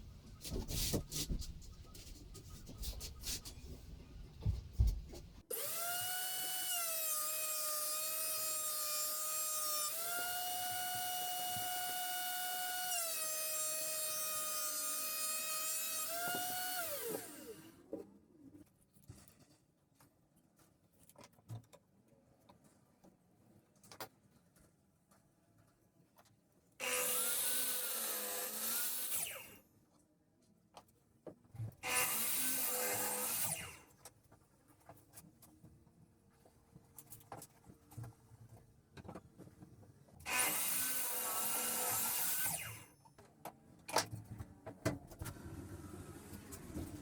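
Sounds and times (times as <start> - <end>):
power tool cutting wood: 5.5 - 17.8, 26.8 - 29.6, 31.8 - 33.8, 40.3 - 42.9.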